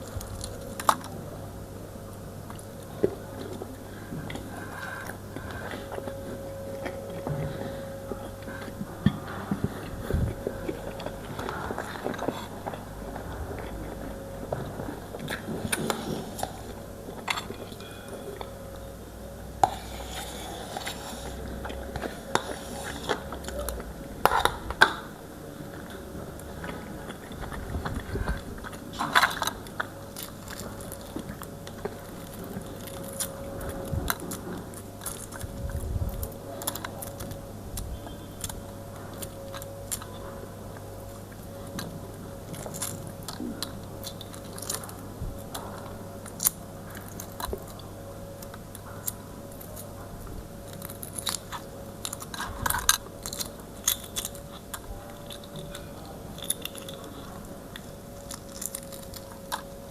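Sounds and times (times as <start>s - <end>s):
person chewing and lip-smacking: 0.0s - 1.4s, 2.1s - 59.9s
faint steady hum: 0.0s - 59.9s.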